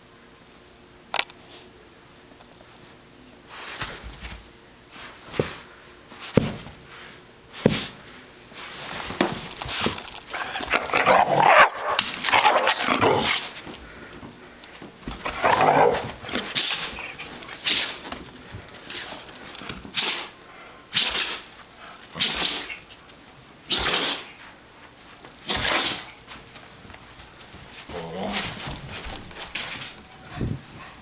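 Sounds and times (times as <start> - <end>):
puppy sneezing: 16.5 - 17.0, 17.6 - 18.0, 19.9 - 21.5, 22.2 - 22.8, 23.7 - 24.4, 25.4 - 26.2.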